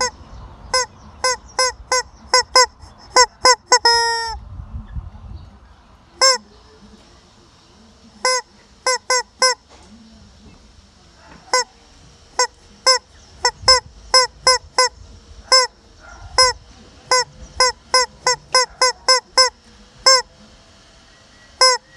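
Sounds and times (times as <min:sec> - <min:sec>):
hen squawking: 0:00.0 - 0:04.4, 0:06.2 - 0:06.6, 0:08.2 - 0:09.6, 0:11.2 - 0:20.3, 0:21.6 - 0:21.9.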